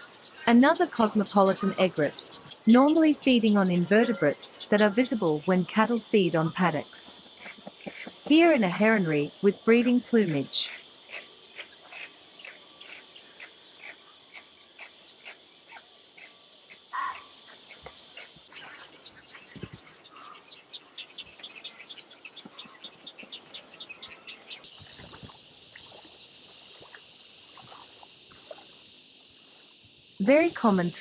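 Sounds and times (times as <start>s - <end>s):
animal calls: 0.0s - 20.5s
rapid pulsing animal call: 0.0s - 20.5s
high insect chorus: 0.0s - 31.0s.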